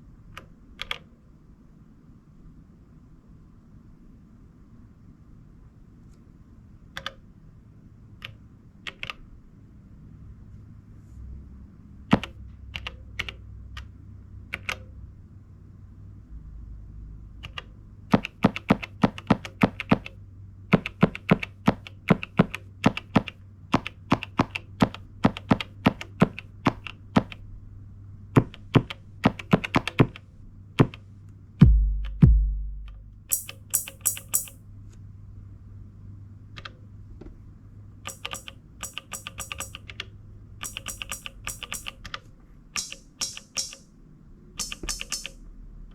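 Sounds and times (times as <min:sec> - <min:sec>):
deep kick drum thumps: 0:31.6 - 0:33.3
clicky drum machine percussion: 0:31.6 - 0:34.6, 0:38.1 - 0:40.0, 0:40.6 - 0:42.1, 0:42.8 - 0:43.9, 0:44.6 - 0:45.4
crisp hi-hat ticks: 0:31.6 - 0:34.6, 0:38.1 - 0:39.9, 0:40.6 - 0:42.0, 0:42.8 - 0:43.9, 0:44.6 - 0:45.4.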